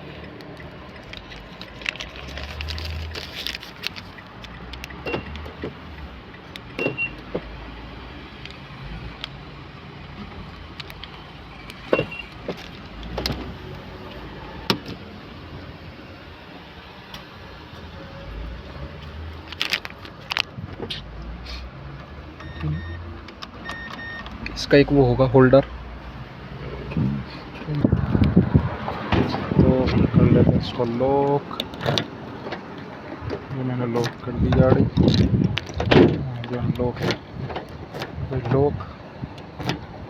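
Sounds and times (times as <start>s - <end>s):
handling clicks and rattles: 0.1s - 7.5s, 19.0s - 21.0s, 30.8s - 38.7s
high beeps: 22.4s - 23.0s, 23.7s - 24.2s.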